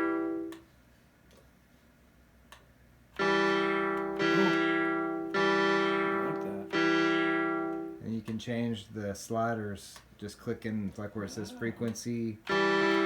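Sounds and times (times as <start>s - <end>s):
sustained synth note: 3.2s - 7.9s, 12.5s - 13.0s.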